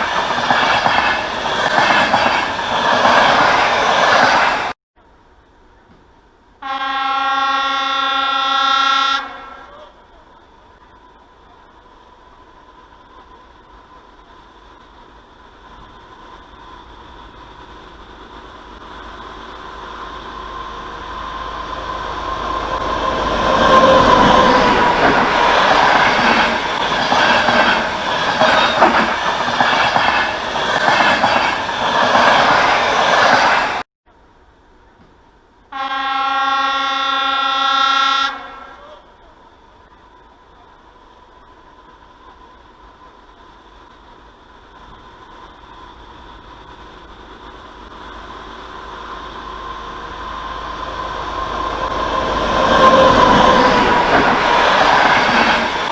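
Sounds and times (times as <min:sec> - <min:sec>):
train wheels clattering on rails: 0:00.0 - 0:04.7, 0:22.8 - 0:33.8, 0:51.8 - 0:55.9
train horn blast: 0:06.6 - 0:10.0, 0:35.7 - 0:39.1.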